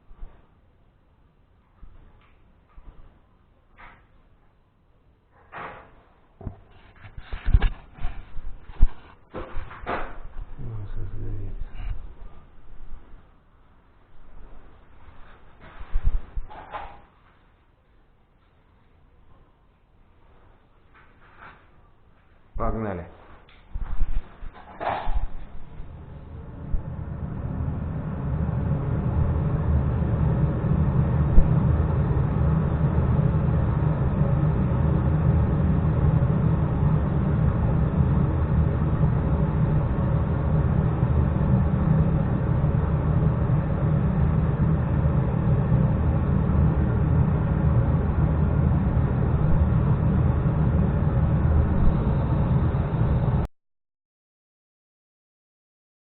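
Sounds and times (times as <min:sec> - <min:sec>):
duct fan running: 0:06.4 - 0:13.2, 0:23.5 - 0:53.5.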